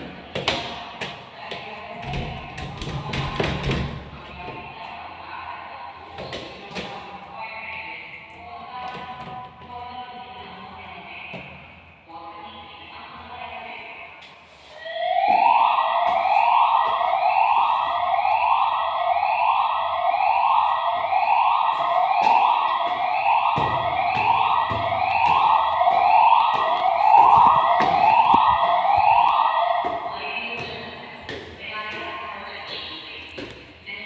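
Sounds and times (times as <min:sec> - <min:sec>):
fire alarm rising tone sweep: 0:14.7 - 0:30.4.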